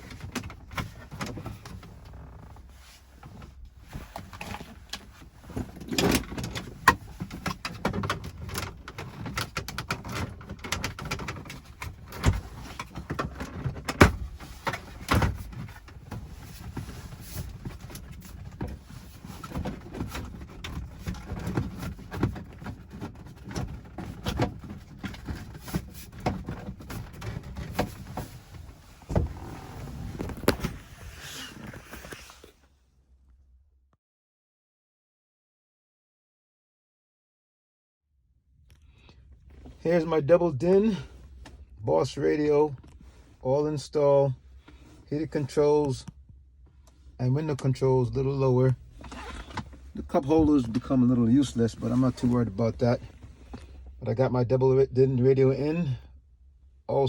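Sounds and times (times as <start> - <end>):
plastic and metal clicks and scraping: 4.2 - 28.3.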